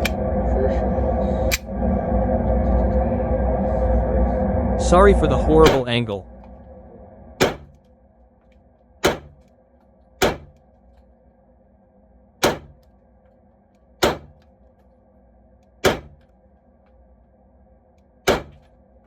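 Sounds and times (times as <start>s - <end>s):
airsoft pistol shots: 7.4s - 7.8s, 9.0s - 9.4s, 10.2s - 10.6s, 12.4s - 12.8s, 14.0s - 14.4s, 15.8s - 16.2s, 18.3s - 18.6s.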